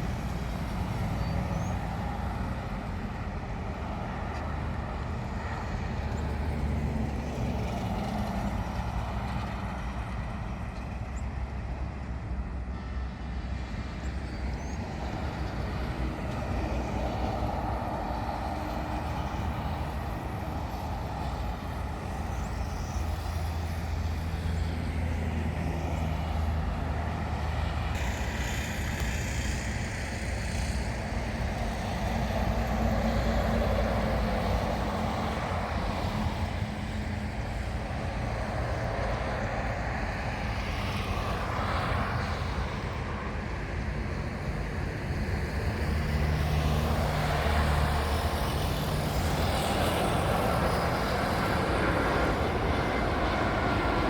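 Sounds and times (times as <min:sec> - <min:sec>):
vehicle engines humming: 0:00.0 - 0:54.0
vehicles swishing past: 0:15.2 - 0:54.0.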